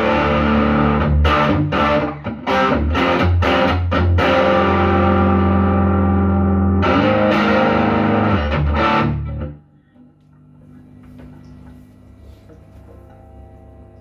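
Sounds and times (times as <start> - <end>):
distorted electric guitar chords: 0.0 - 9.6
faint amplifier hum: 0.0 - 14.0.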